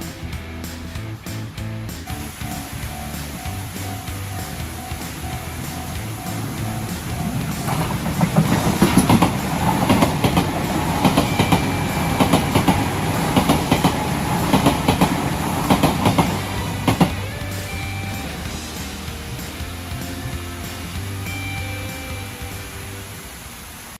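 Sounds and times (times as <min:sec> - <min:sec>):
train wheels clacking over rail joints: 0:02.1 - 0:17.9.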